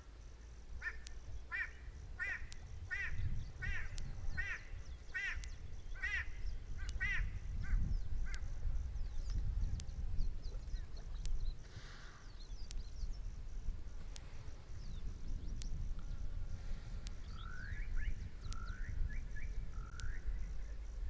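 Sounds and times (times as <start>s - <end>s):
faint steady high buzz: 0.0s - 21.0s
sharp ticks: 0.5s - 11.6s, 12.5s - 14.3s, 15.5s - 16.2s, 17.0s - 17.7s, 18.4s - 20.3s
wind rumble on microphone: 0.6s - 21.0s.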